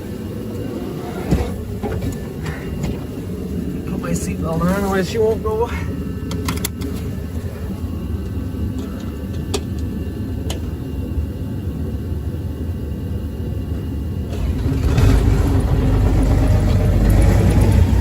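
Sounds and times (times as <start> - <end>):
diesel engine starting and running: 0.0 - 10.8, 13.8 - 18.0
low rumble: 14.3 - 18.0.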